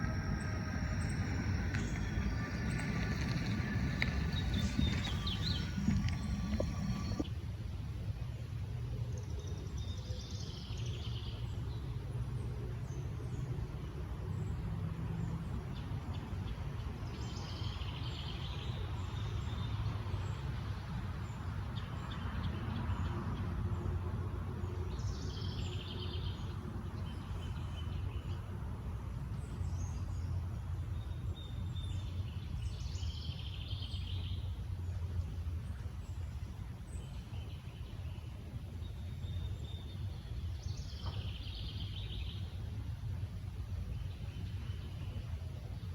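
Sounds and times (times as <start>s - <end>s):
songbirds singing: 0.0s - 7.2s
distant traffic rumble: 0.0s - 7.3s.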